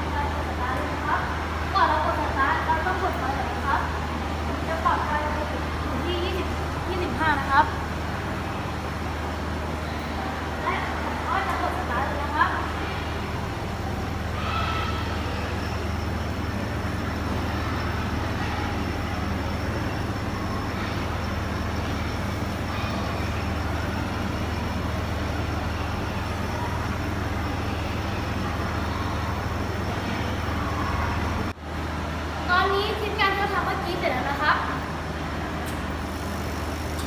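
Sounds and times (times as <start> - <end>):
laser engraving machine hum: 0.0 - 37.0
pump and fan hiss: 0.0 - 37.0.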